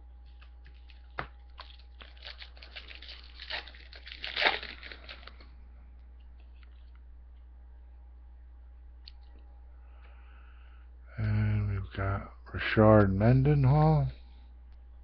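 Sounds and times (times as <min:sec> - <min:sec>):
foil wrapper crinkling and tearing: 0:00.3 - 0:05.5.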